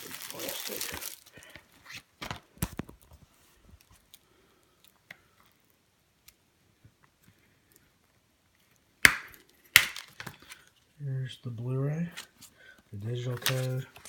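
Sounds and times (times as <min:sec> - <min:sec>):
plastic wrap crackling: 0:00.0 - 0:03.1
plastic wrap clicks and crinkles: 0:00.0 - 0:03.2, 0:08.6 - 0:10.8, 0:13.2 - 0:14.0.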